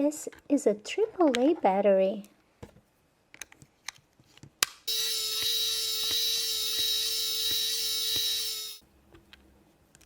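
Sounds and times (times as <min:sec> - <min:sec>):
toy hair dryer fan whine: 0:04.9 - 0:08.8.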